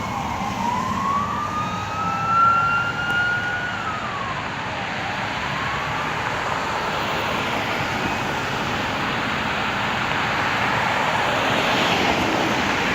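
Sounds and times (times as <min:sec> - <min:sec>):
faint siren wail: 0:00.0 - 0:09.2
road traffic noise: 0:00.0 - 0:12.9.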